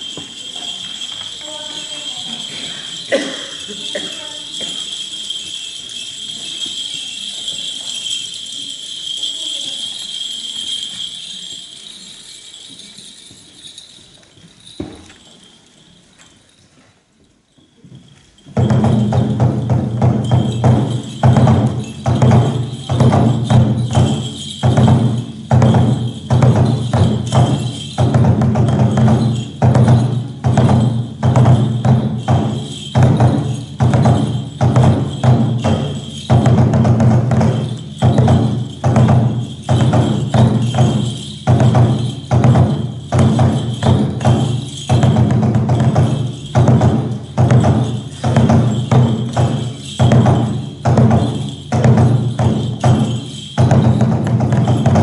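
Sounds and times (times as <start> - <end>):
held high tone: 0.0 - 16.4
hand cymbals clashing: 0.0 - 16.7, 17.4 - 55.0
taiko drum beating: 18.6 - 55.0.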